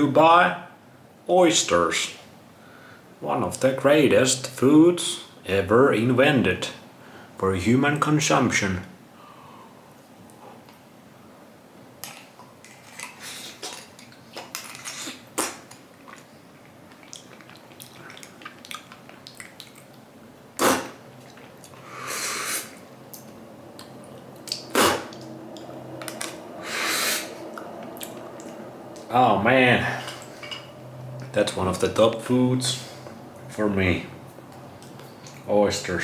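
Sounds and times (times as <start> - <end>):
short hissing: 20.6 - 21.0, 21.8 - 22.8, 24.7 - 25.2, 26.6 - 27.5
dishes and cutlery clinking: 29.9 - 30.8.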